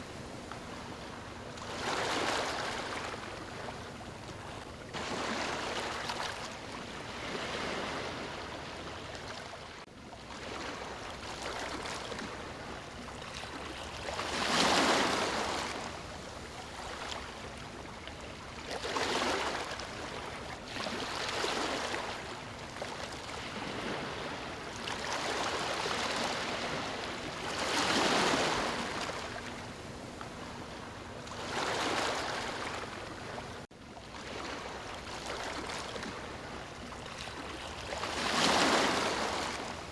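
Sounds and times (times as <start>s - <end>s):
ocean waves breaking on beach: 5.0s - 12.6s, 13.5s - 15.9s, 18.8s - 30.2s, 31.2s - 39.9s.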